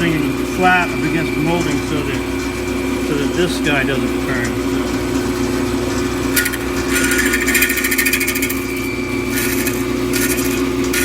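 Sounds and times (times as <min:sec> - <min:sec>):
bandsaw motor running: 0:00.0 - 0:11.0
bandsaw blade cutting wood: 0:06.3 - 0:11.0.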